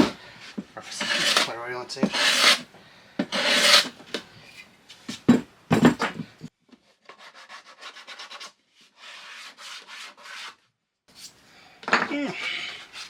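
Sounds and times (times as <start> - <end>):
plane shaving wood: 1.0 - 1.5, 2.1 - 2.6, 3.3 - 3.9.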